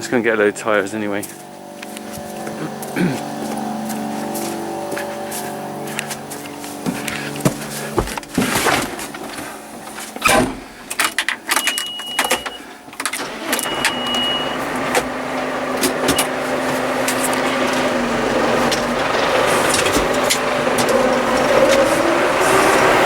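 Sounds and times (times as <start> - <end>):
tractor engine drone: 0.0 - 23.0
tractor knocks and rattles: 6.1 - 23.0.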